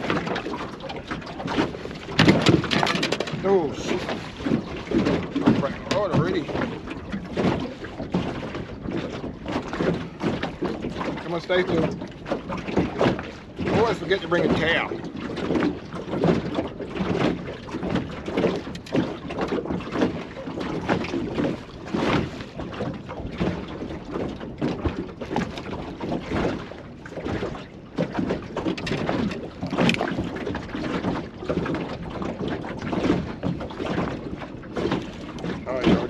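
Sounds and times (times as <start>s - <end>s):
water slapping boat hull: 0.0s - 36.0s
knocks and rustles: 1.5s - 3.4s.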